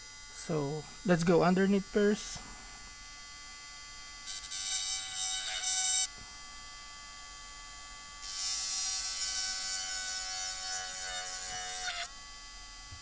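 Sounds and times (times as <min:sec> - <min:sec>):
small electric tool grinding: 0:03.8 - 0:06.3, 0:07.7 - 0:12.2.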